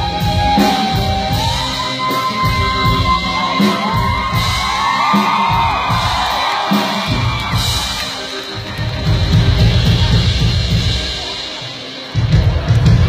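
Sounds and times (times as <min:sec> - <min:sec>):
crowd cheering and whooping: 0:00.0 - 0:13.0
live band playing loud music: 0:00.0 - 0:13.0.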